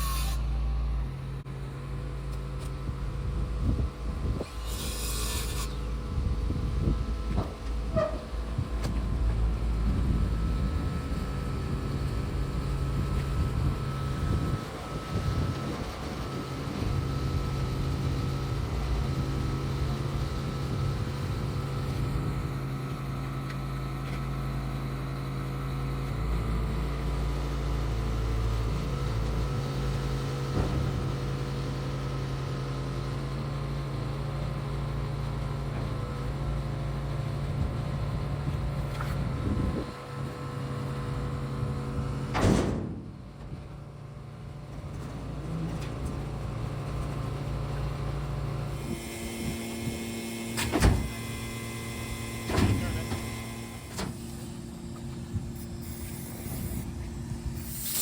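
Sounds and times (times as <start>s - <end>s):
engine droning: 0.0s - 58.0s.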